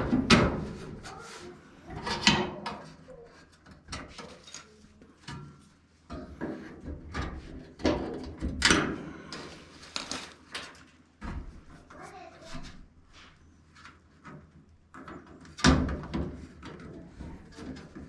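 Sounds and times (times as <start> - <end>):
appliance parts knocking and scraping: 0.0 - 3.0.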